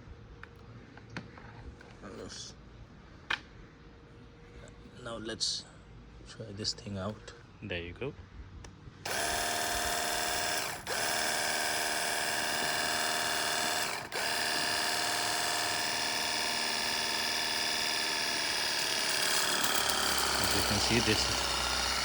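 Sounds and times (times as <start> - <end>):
pressure washer pump whining: 9.1 - 22.0.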